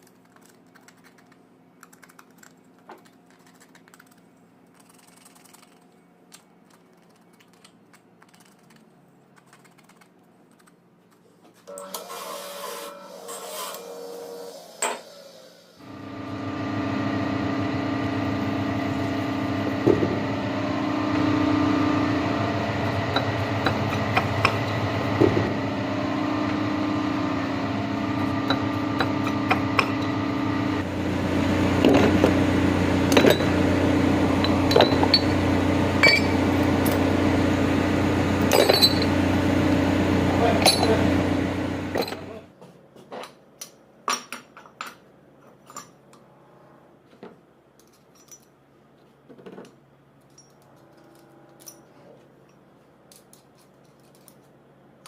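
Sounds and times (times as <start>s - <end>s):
electric motor running: 11.8s - 42.5s.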